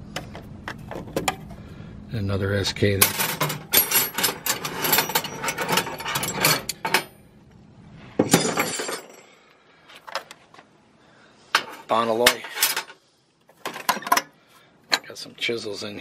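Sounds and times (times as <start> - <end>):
wrenches clinking against metal: 3.0 - 7.2, 8.2 - 9.3, 11.6 - 13.0, 13.6 - 14.3, 14.9 - 15.3.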